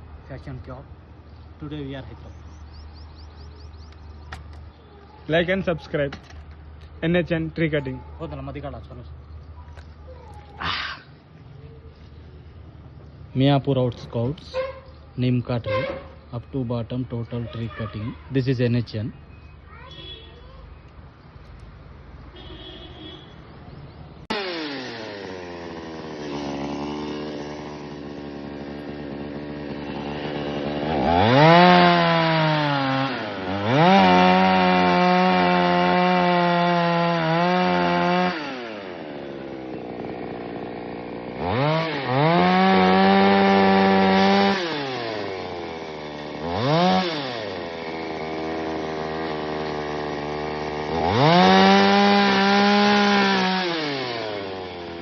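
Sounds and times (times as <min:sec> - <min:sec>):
chainsaw idling and revving: 0:24.2 - 0:55.0.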